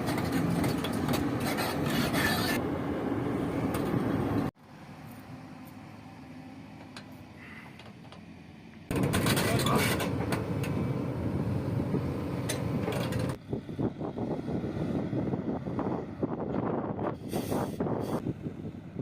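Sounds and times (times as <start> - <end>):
rattling and grinding: 0.0 - 2.6, 8.9 - 10.8, 12.4 - 13.4
heavy vehicle engine under load: 0.0 - 19.0
steady engine hum: 0.0 - 19.0.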